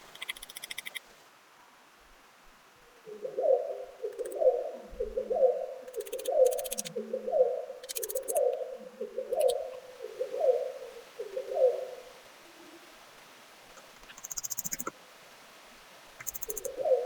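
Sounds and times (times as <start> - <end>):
bird hooting call: 2.9 - 12.9, 16.2 - 17.0
rapid high-pitched ticking: 5.9 - 6.9, 7.8 - 8.4, 14.1 - 14.9, 16.2 - 16.7.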